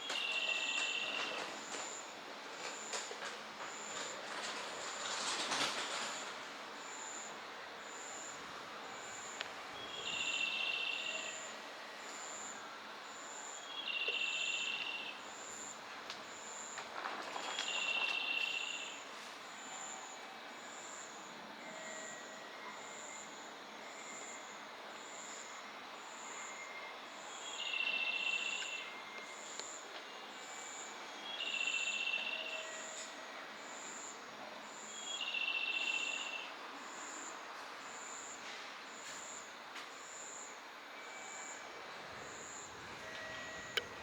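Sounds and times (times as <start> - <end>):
insect trill: 9.1 - 11.4, 13.2 - 15.7, 17.6 - 19.0, 30.1 - 33.0, 34.7 - 37.3, 40.0 - 44.0
high insect chirp: 41.4 - 44.0.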